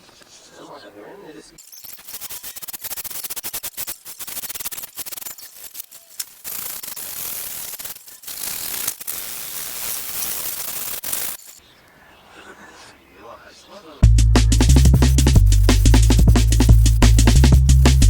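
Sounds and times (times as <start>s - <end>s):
hand tool scraping foam: 1.8s - 11.6s, 14.6s - 18.0s.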